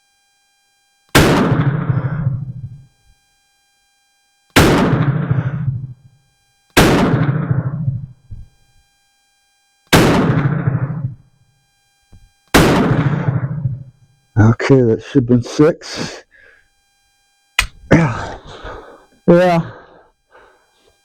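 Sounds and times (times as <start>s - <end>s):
revolver gunshots: 1.2s - 2.3s, 4.6s - 5.7s, 6.8s - 7.9s, 9.9s - 11.2s, 12.5s - 13.7s.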